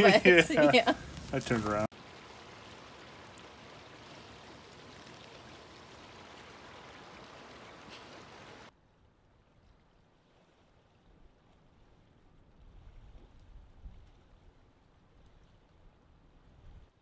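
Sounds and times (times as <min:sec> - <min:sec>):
rushing water hiss: 0:00.0 - 0:08.7.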